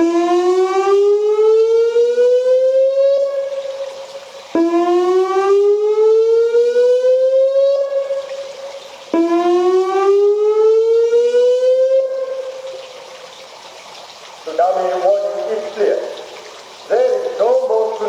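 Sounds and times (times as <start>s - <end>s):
warning siren sweeping upward: 0.0s - 13.2s.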